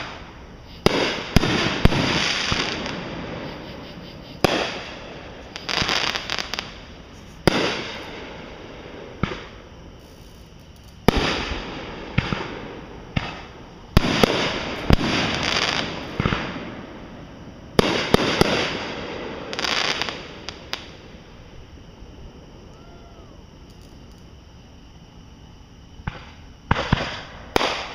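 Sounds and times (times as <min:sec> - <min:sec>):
fireworks bangs: 0:00.0 - 0:21.3, 0:26.0 - 0:27.9.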